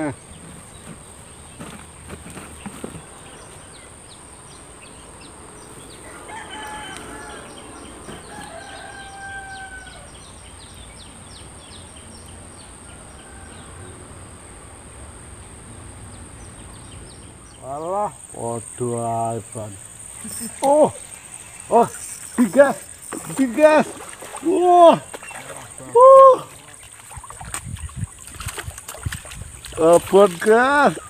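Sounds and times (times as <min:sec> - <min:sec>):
high insect whine: 0:00.0 - 0:31.0
rooster crowing: 0:05.9 - 0:10.2, 0:12.8 - 0:14.4.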